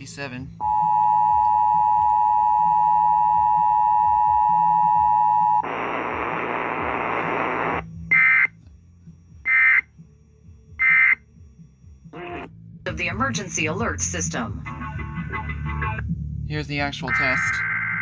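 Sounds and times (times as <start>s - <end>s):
two-tone attention signal: 0.6s - 5.7s
radio static hiss: 5.1s - 8.4s.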